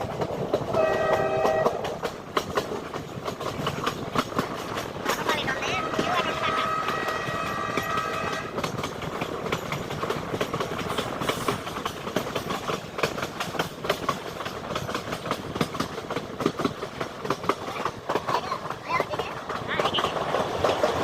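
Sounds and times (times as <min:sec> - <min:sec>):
train rumble: 0:00.0 - 0:21.0
train wheels clattering over rail joints: 0:00.0 - 0:21.0
train horn chord: 0:00.8 - 0:01.9, 0:05.9 - 0:08.5.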